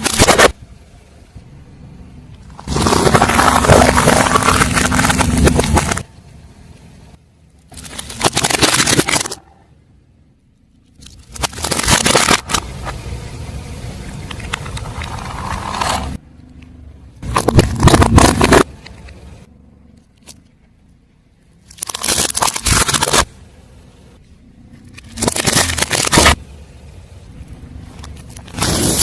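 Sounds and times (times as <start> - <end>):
tyres crunching objects: 0.0 - 0.6, 2.4 - 6.2, 7.6 - 9.7, 10.7 - 13.2, 14.0 - 20.8, 21.4 - 23.6, 24.6 - 26.6, 27.3 - 29.0
low rumble: 0.5 - 22.0.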